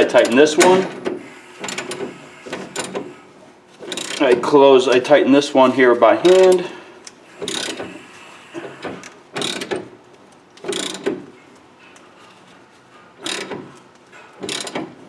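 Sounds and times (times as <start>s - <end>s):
ratchet wrench clicking: 1.6s - 2.0s, 2.7s - 3.0s, 3.9s - 4.2s, 7.4s - 7.8s, 9.4s - 9.8s, 10.6s - 11.1s, 13.2s - 13.6s, 14.4s - 14.8s.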